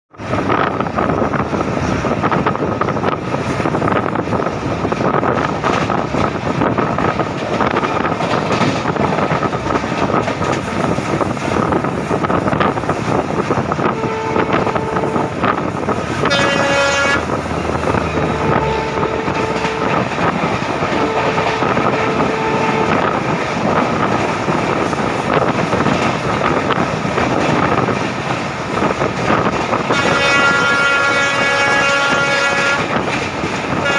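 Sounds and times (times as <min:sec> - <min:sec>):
train wheels rattling: 0:00.2 - 0:33.9
two-note locomotive horn: 0:13.8 - 0:15.4, 0:16.2 - 0:20.1, 0:20.8 - 0:23.2, 0:29.9 - 0:33.0.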